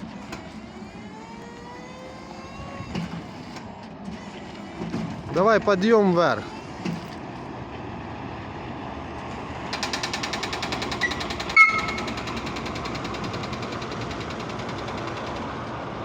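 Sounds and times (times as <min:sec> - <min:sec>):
aerial lift mechanical noise: 0:00.0 - 0:16.0
rapid even clatter: 0:09.7 - 0:15.6.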